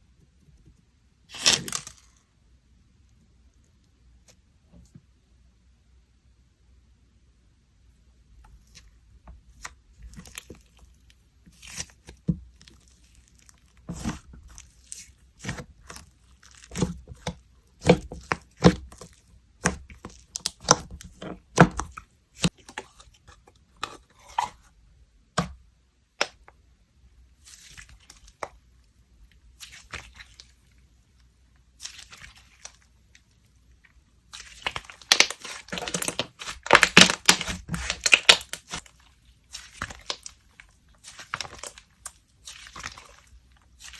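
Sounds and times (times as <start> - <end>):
slime crackling and tearing: 1.3 - 2.2, 9.5 - 22.6, 34.3 - 43.9
slime squished with clicks and pops: 25.4 - 26.6.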